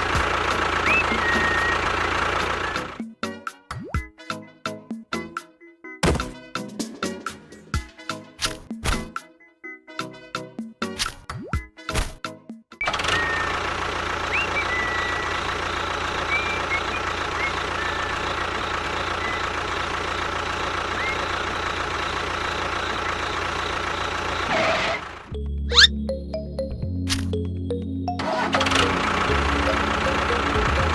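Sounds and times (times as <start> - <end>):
small motor running: 0.0 - 3.0, 12.8 - 25.9, 28.2 - 30.9
short high chirps: 0.8 - 3.0, 14.3 - 15.5, 16.2 - 18.4, 25.7 - 25.9.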